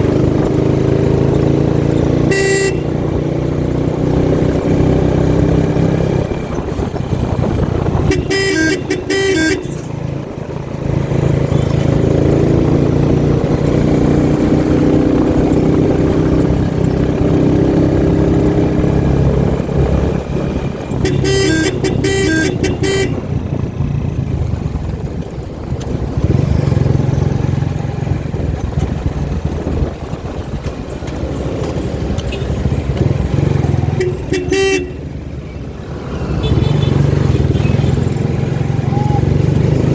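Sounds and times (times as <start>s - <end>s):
vehicle engine running: 0.0s - 39.9s
quick repeated horn beeps: 2.3s - 3.0s, 8.0s - 9.9s, 20.9s - 23.4s, 33.9s - 35.1s.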